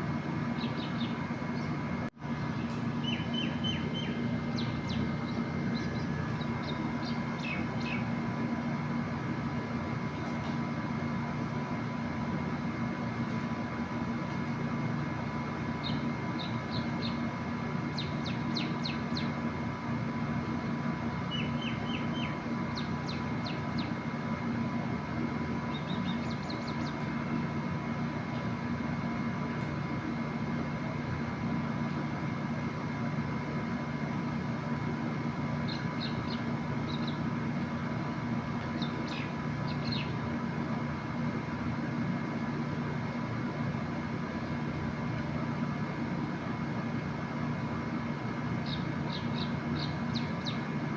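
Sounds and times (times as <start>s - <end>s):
steady droning hum: 0.0s - 50.9s
small birds chirping: 0.5s - 1.8s, 2.4s - 8.2s, 15.8s - 19.4s, 21.2s - 24.0s, 25.6s - 27.5s, 35.6s - 37.3s, 38.6s - 40.2s, 48.6s - 50.8s.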